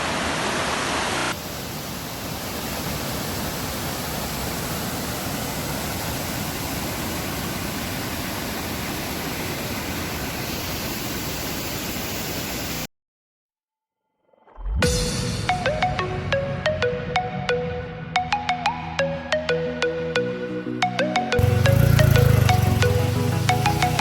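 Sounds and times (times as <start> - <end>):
water rushing down waterfall: 0.0 - 12.9, 21.4 - 24.0.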